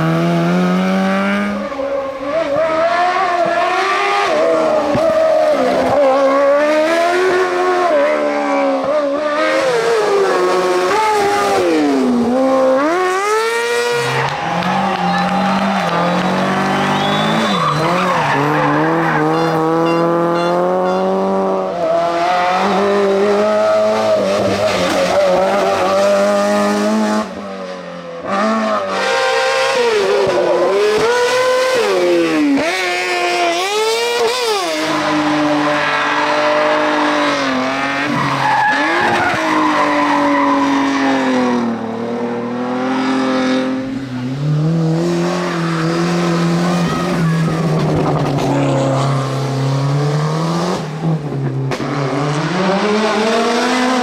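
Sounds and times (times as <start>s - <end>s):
car engine revving: 0.0s - 54.0s
tyres squealing: 14.1s - 21.1s.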